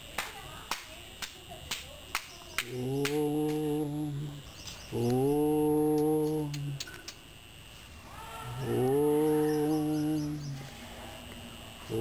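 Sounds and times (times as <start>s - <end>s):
low voice humming: 2.6s - 7.1s, 8.1s - 11.2s, 11.8s - 12.0s
sharp clicks: 5.9s - 7.2s.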